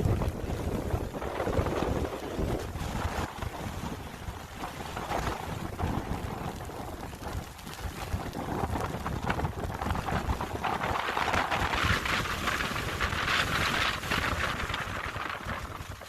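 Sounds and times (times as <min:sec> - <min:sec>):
hissing wind-driven rain: 0:00.0 - 0:16.0
wind gusts buffeting microphone: 0:00.0 - 0:16.0.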